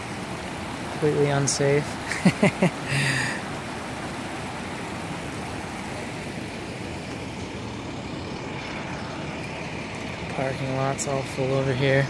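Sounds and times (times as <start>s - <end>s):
floodwater rushing: 0.0s - 12.0s.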